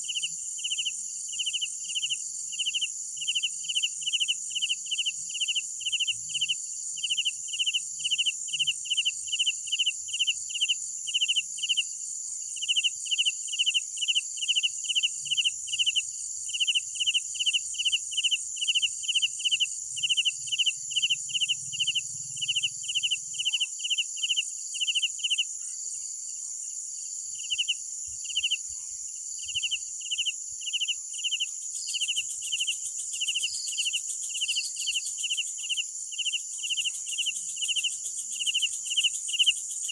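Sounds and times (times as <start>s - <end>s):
nearby cricket chirping: 0.0s - 39.9s
crickets trilling: 12.5s - 39.9s.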